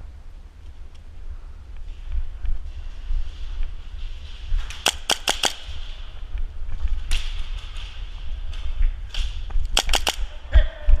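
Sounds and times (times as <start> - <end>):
airsoft gun shots: 4.8 - 5.9, 9.7 - 10.5.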